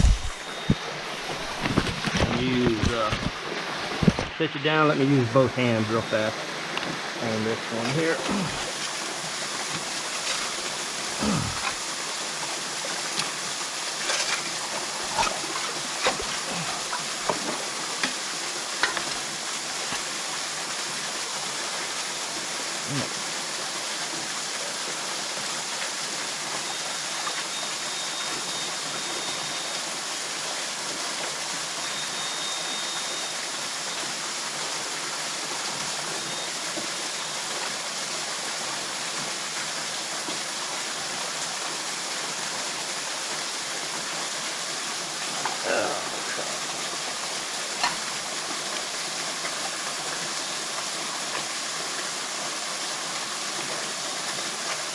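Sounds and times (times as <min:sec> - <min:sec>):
creek water rushing: 0:00.0 - 0:54.9
rocks knocking and clacking: 0:01.5 - 0:03.4, 0:04.0 - 0:04.4.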